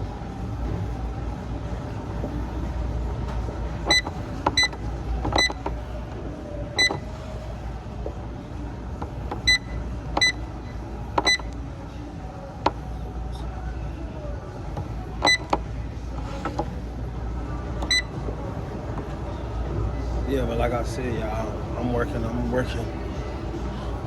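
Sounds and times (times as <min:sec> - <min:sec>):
steady low hum: 0:00.0 - 0:24.0
exercise machine beeps: 0:01.6 - 0:11.6, 0:15.1 - 0:16.9, 0:17.6 - 0:21.0.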